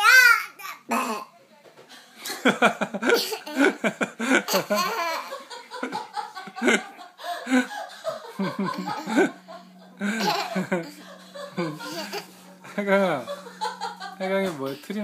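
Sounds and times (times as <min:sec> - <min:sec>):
hearty laughter: 0:02.2 - 0:12.3.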